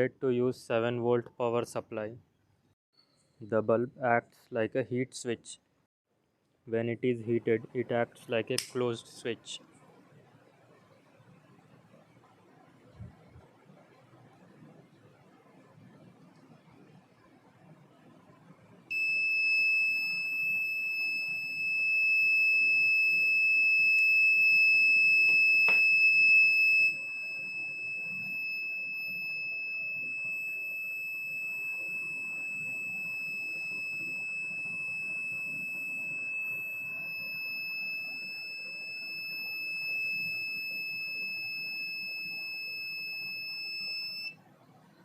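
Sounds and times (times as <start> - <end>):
high-pitched electronic buzzer tone: 18.9 - 44.4.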